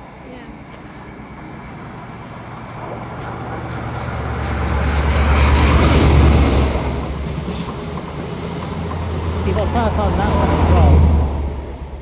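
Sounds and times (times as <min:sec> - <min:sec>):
train approaching rumble: 0:00.0 - 0:12.0
deep diesel engine drone: 0:00.1 - 0:12.0.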